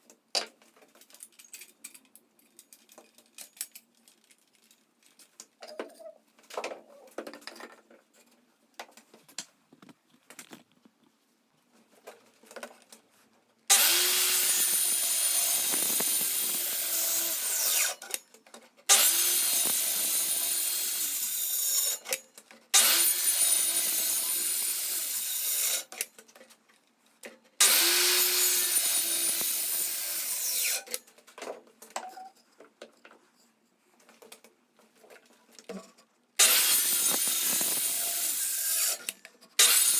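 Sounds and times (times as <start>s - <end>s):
power tool working wood: 13.7s - 18.1s, 18.9s - 22.0s, 22.8s - 25.9s, 27.6s - 31.0s, 36.4s - 39.9s.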